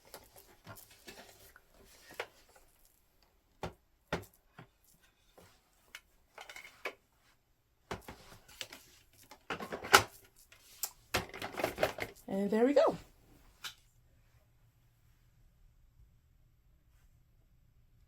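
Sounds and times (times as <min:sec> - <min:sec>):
plastic parts clicking and knocking: 0:07.9 - 0:12.2.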